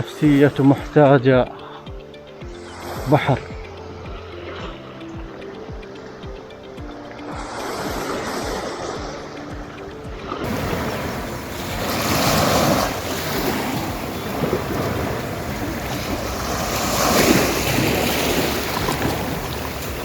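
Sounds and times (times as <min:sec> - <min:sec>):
sea waves washing onto beach: 0:02.4 - 0:20.0
wind buffeting microphone: 0:10.4 - 0:20.0.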